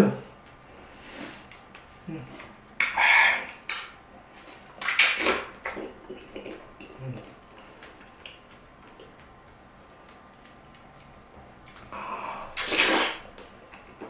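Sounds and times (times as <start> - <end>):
mouth clicks and smacks: 1.4 - 4.0, 4.7 - 14.0
loud wet bites: 4.8 - 9.1, 11.6 - 13.4.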